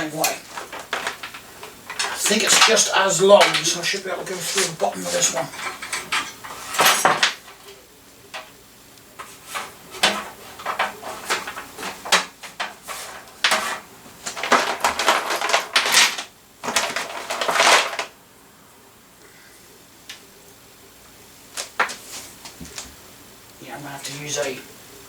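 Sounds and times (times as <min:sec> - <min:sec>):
cables rustling and scraping: 0:00.0 - 0:18.2, 0:21.5 - 0:23.1.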